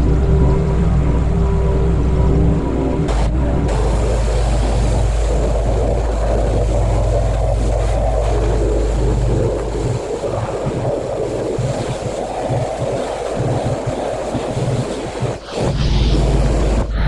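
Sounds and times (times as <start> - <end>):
pressure washer motor hum: 3.1 - 15.3
water spray hissing: 3.7 - 16.9.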